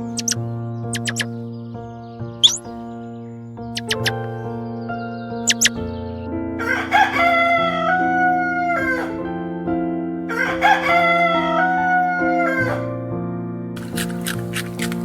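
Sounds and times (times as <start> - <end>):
background music sustained notes: 0.0 - 15.0
rooster crowing: 6.6 - 9.3, 10.3 - 13.0.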